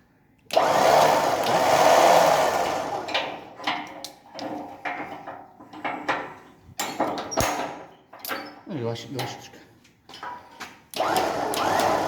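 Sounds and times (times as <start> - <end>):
electric winch motor running: 0.5 - 3.6, 11.0 - 12.0
sharp mechanical clicks and knocks: 10.9 - 12.0.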